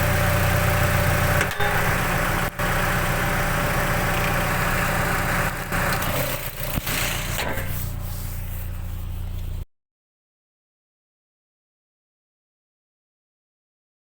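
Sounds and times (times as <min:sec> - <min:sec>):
car engine running: 0:00.0 - 0:09.6
loud engine intake noise: 0:00.0 - 0:09.6.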